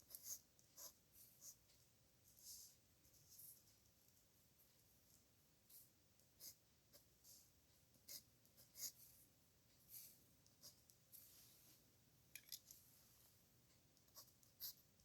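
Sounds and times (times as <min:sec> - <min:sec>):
pen scratching on paper: 0:00.0 - 0:01.6, 0:05.7 - 0:09.2, 0:14.1 - 0:14.9.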